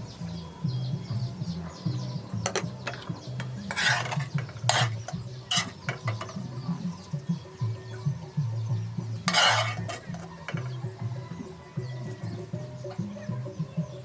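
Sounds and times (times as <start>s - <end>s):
soft background music: 0.0s - 14.0s
metal utensil scraping a pot: 2.4s - 6.8s, 9.2s - 10.8s.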